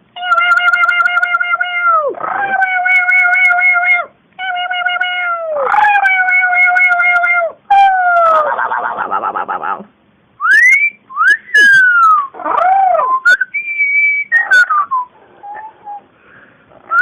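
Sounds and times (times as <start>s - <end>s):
pet's drawn-out calls: 14.4s - 16.1s.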